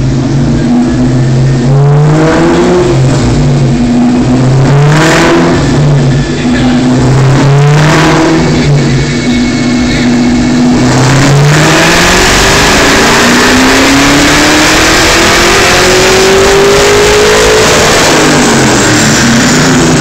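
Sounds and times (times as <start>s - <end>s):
car engine revving on dyno: 0.0s - 20.0s.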